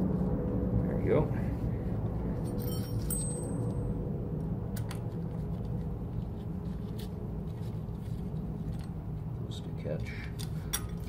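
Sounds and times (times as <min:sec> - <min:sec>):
low background hum: 0:00.0 - 0:11.0
small steel hardware clinking: 0:02.4 - 0:03.8, 0:10.0 - 0:11.0.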